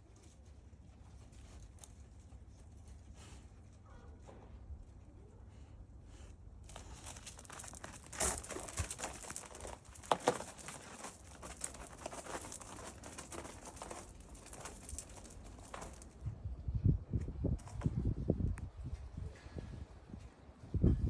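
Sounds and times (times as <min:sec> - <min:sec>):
crinkling and rustling: 0:06.6 - 0:16.2.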